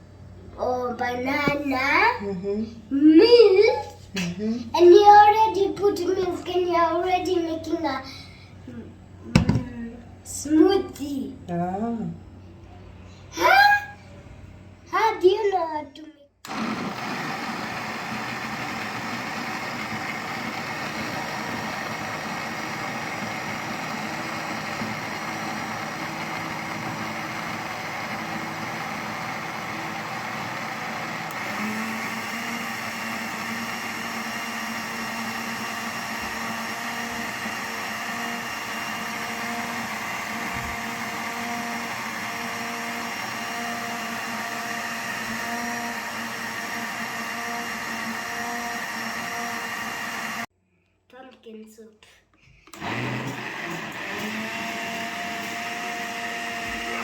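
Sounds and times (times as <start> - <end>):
electric blender running: 16.5 - 50.5, 52.7 - 57.0.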